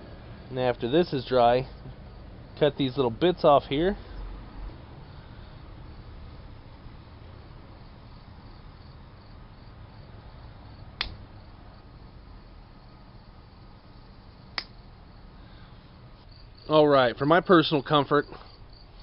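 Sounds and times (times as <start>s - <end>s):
crickets chirping: 0.2s - 19.0s
sharp clicks: 11.0s - 11.2s, 14.5s - 14.8s.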